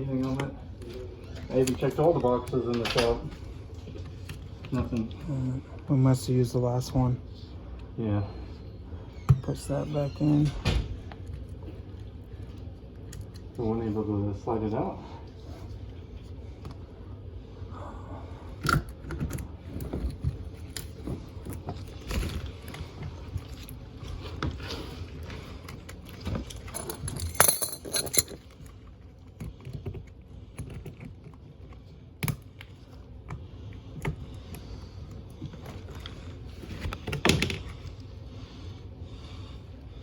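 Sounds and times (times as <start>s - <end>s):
tools and parts clattering: 26.2s - 28.6s
metallic jangle: 26.7s - 28.4s.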